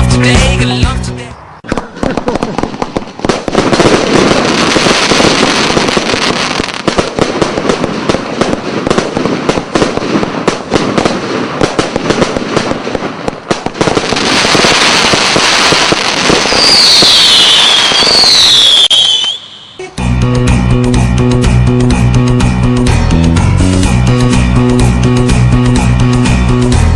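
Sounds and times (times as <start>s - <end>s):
fireworks crackling bangs: 1.6s - 19.9s
high falling whistles: 16.5s - 20.0s.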